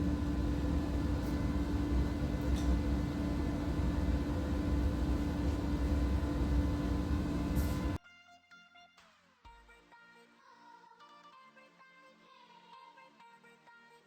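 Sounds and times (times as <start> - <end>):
machine hum with low drone: 0.0 - 8.0.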